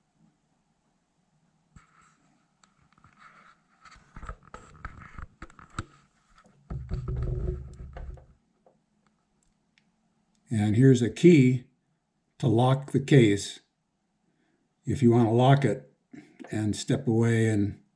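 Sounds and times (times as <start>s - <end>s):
low rumbling handling noise: 6.6s - 8.4s.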